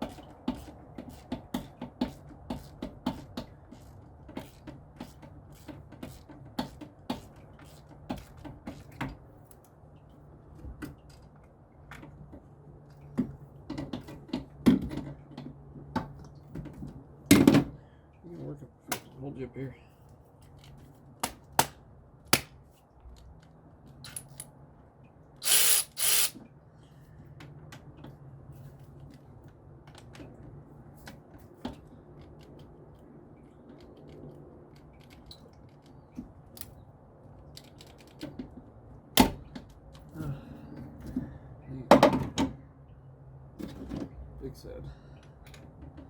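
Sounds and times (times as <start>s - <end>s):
clinks and knocks of tools: 23.9s - 24.5s
power tool running: 25.4s - 26.4s.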